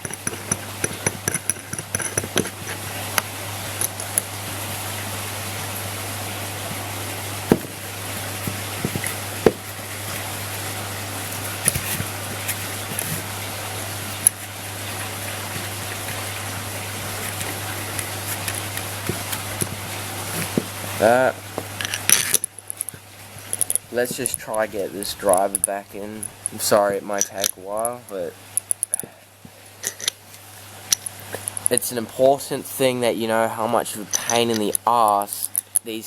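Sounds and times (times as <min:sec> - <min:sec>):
small metal clicks and taps: 0:00.0 - 0:02.6, 0:21.8 - 0:24.5, 0:28.6 - 0:29.1, 0:34.2 - 0:35.9
steady hiss with low hum: 0:00.0 - 0:36.0.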